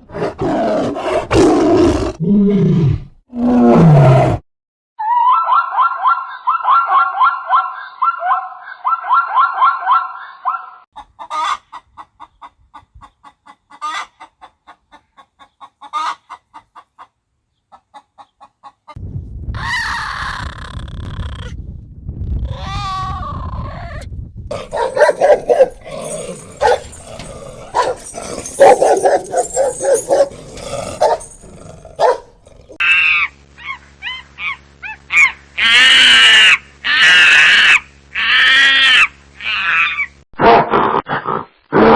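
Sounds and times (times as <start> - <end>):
farm animal calls: 24.5 - 40.1.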